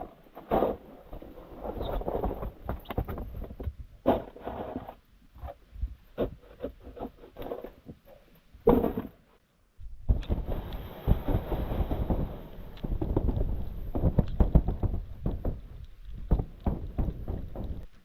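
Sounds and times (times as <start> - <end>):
handling rustles and scrapes: 0.3 - 9.4.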